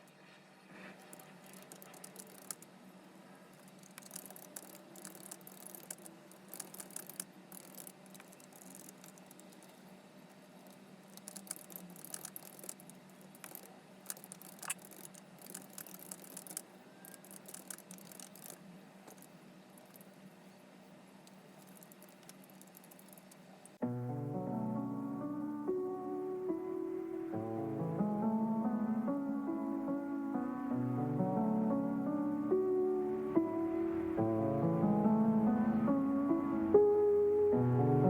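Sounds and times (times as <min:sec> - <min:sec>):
light clicks and rattles: 0:00.8 - 0:02.7, 0:03.5 - 0:09.8, 0:10.6 - 0:20.2, 0:21.3 - 0:23.8.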